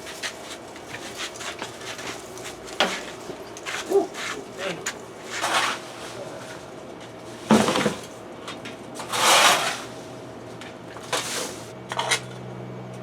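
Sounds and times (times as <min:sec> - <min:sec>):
hands scraping and rustling soil: 0:00.0 - 0:08.2, 0:08.9 - 0:10.2, 0:10.9 - 0:11.8.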